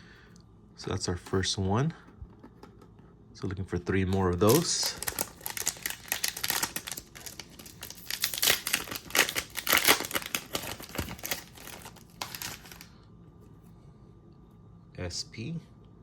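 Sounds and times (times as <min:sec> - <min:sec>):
card pack wrapper crinkling: 0:04.1 - 0:12.9.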